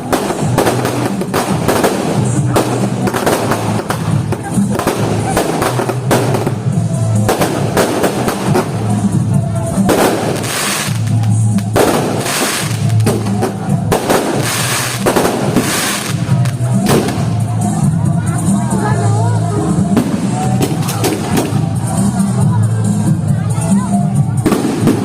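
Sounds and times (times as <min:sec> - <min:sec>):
fireworks bangs: 0:00.0 - 0:17.9, 0:19.9 - 0:21.8, 0:24.4 - 0:25.0
fireworks crackling bursts: 0:00.0 - 0:25.0
loud music with drum beat: 0:00.0 - 0:25.0.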